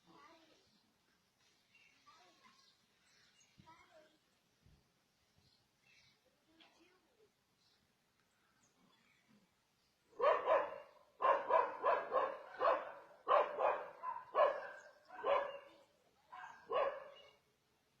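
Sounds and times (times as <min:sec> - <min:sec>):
dog barking: 0:10.2 - 0:17.4.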